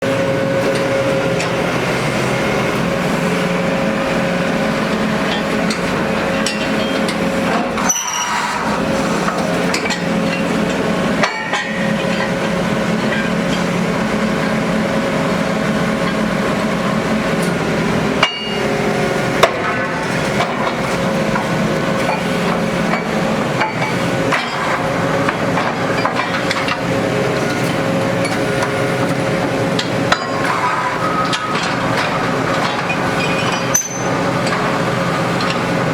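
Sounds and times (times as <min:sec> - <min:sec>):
drilling rig machinery running: 0:00.0 - 0:35.9
sharp metal knocks and clinks: 0:33.3 - 0:34.1.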